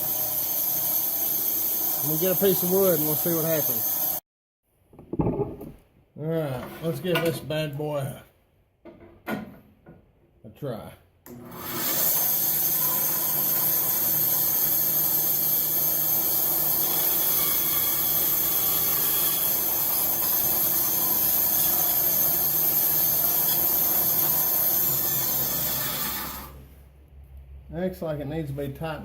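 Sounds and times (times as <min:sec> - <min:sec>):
bandsaw cutting wood: 0:00.0 - 0:04.2, 0:11.3 - 0:26.7.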